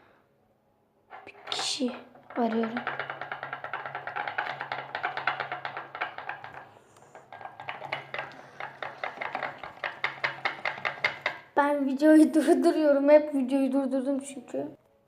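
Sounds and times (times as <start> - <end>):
utensil stirring thick slime: 1.1 - 11.5.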